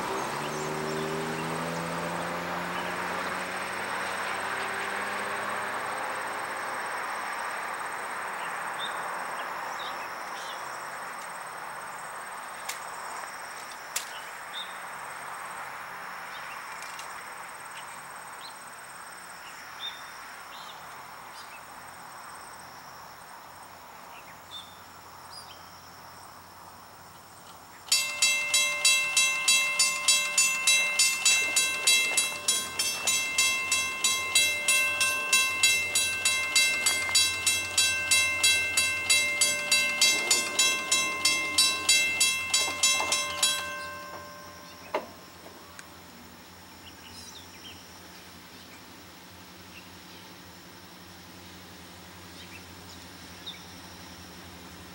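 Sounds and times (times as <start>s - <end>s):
railroad crossing bell ringing: 27.9s - 46.6s.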